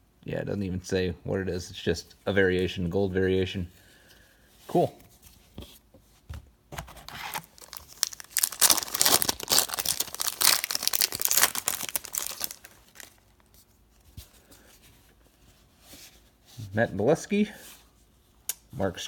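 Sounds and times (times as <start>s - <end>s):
wrapper tearing and crinkling: 7.1s - 13.6s.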